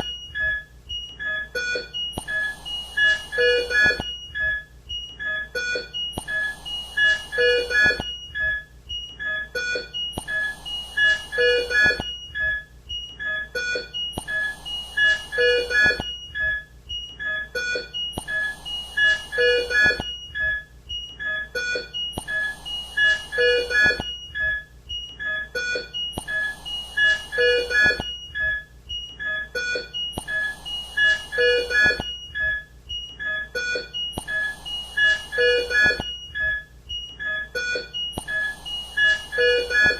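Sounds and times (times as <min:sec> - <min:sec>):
short electronic alarm beeps: 0:00.0 - 0:39.9.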